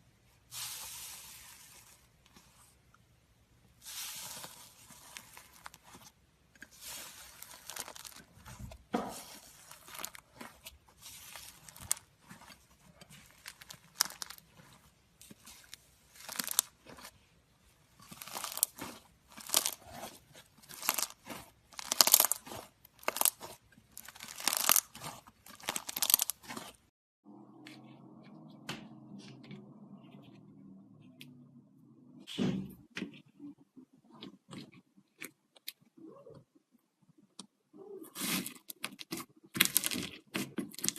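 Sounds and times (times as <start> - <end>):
crusty slime crackling: 3.8 - 17.2, 17.9 - 26.9.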